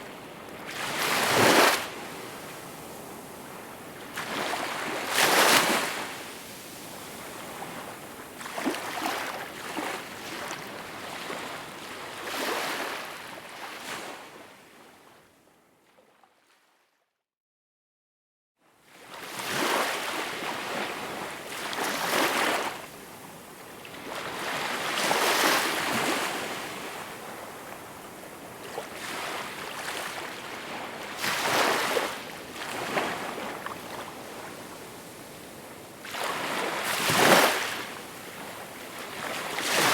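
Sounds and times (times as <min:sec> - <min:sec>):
small waves washing ashore: 0:36.0 - 0:39.9.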